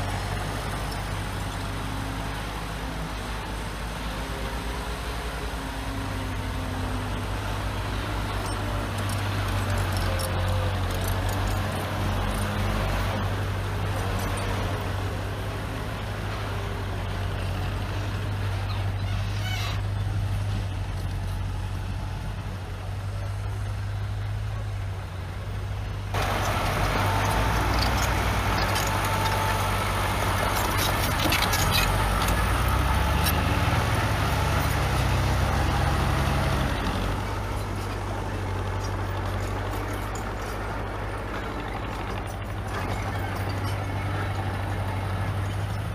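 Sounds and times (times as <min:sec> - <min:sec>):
heavy diesel engines rumbling: 0:00.0 - 0:45.9
brief squeals: 0:18.6 - 0:20.0.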